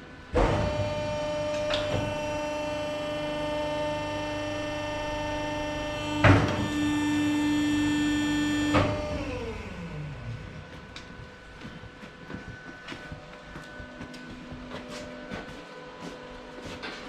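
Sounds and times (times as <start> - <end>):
power tool motor whining: 0.4 - 10.7.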